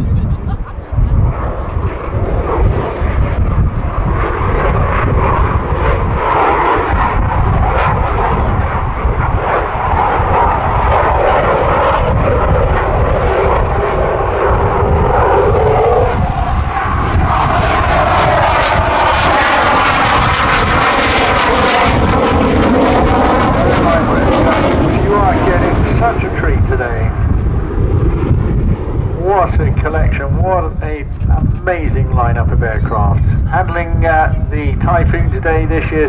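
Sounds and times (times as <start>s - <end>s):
jet engine roar flying past: 0.4s - 36.0s.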